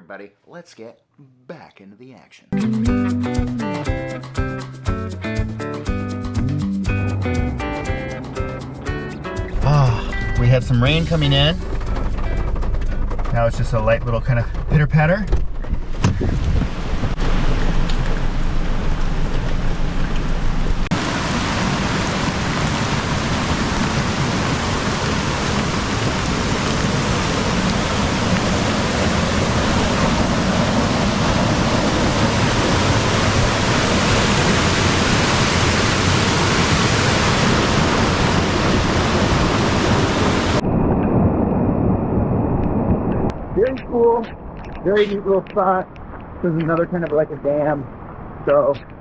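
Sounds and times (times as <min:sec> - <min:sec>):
road rumble: 0:09.4 - 0:40.6
light rain on a car: 0:16.7 - 0:33.9
water spilling over a dam: 0:20.9 - 0:40.6.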